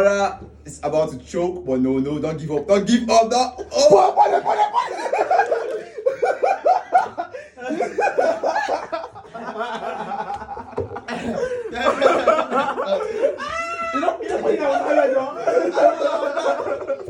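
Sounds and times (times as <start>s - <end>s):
people talking: 0.0s - 5.7s, 11.1s - 17.0s
people laughing: 3.5s - 17.0s.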